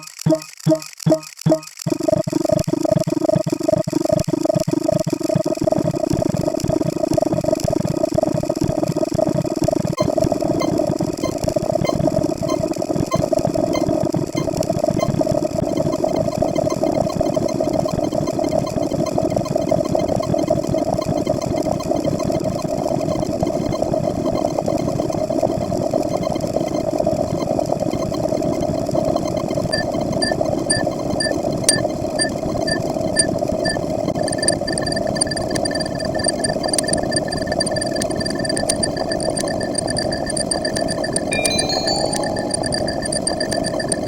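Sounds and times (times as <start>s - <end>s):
rapid sped-up sound effects: 0.0s - 3.0s
faint short high beeps: 41.3s - 43.4s.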